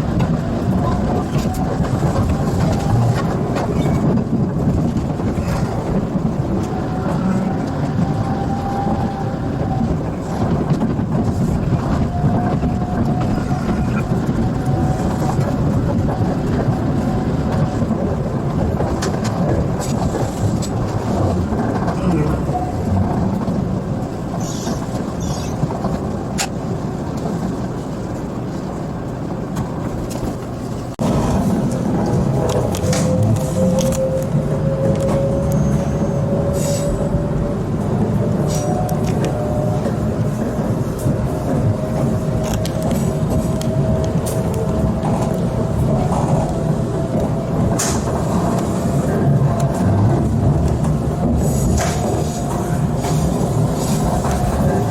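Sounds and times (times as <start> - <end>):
train rumbling: 0.0 - 54.9
people's voices: 21.0 - 23.5.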